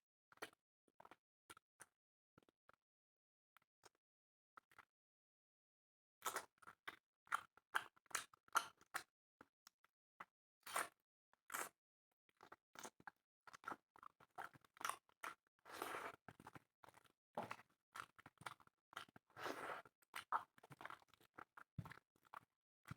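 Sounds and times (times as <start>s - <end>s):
person chewing and crunching: 18.0s - 22.4s.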